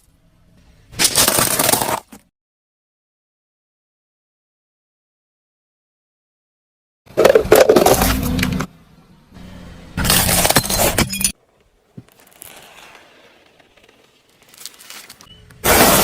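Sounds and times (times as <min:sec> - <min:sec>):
objects crushed under car tyre: 0:01.0 - 0:02.2, 0:07.2 - 0:08.5, 0:10.0 - 0:16.0.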